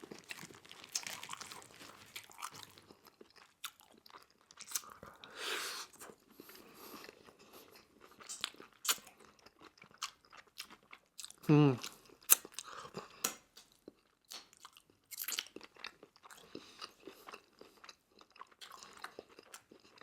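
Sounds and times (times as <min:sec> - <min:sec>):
crunching fried chicken: 0:00.0 - 0:05.0
chewing: 0:00.0 - 0:20.0.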